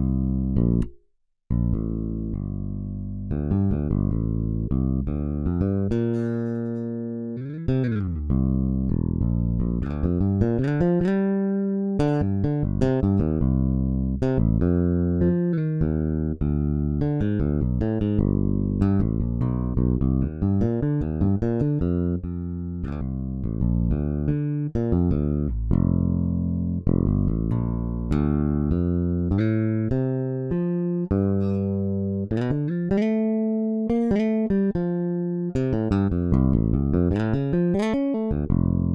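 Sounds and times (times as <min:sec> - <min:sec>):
electric bass notes: 0:00.0 - 0:38.9.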